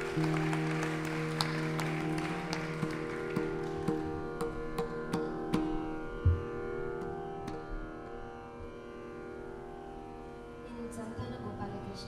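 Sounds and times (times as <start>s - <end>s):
plucked string melody over drone: 0.0s - 12.0s.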